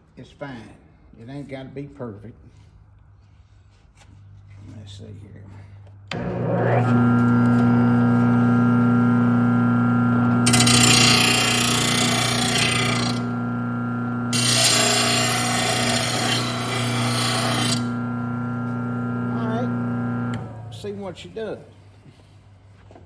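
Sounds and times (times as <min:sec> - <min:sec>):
blade sharpener motor humming: 0:06.1 - 0:21.0
grinding wheel on steel blade: 0:09.2 - 0:21.0.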